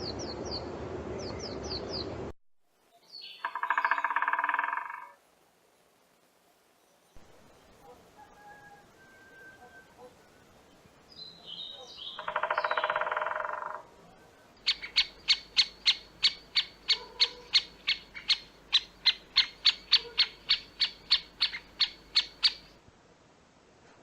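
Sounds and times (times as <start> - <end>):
bird chirping and trilling: 3.0 - 5.1, 11.1 - 13.7, 14.6 - 22.8.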